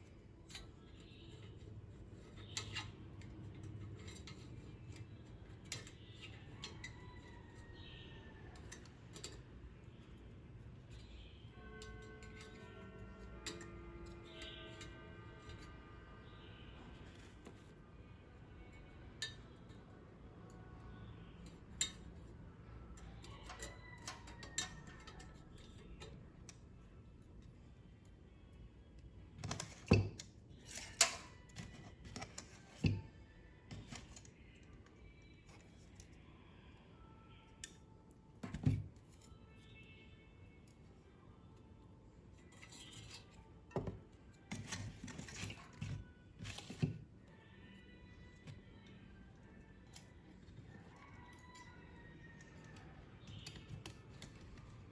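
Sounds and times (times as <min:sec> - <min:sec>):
small hardware parts clicking: 0:29.4 - 0:33.0.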